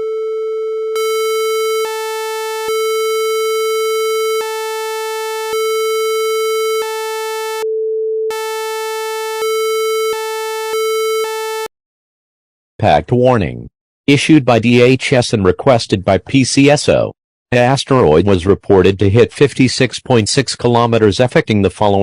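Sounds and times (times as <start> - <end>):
electronic alert tones: 8.3 - 11.7.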